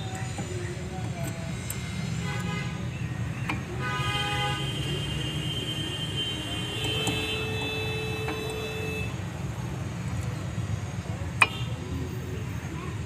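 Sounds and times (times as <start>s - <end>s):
vehicle rumble: 0.0s - 13.0s
high held tones: 4.6s - 9.2s.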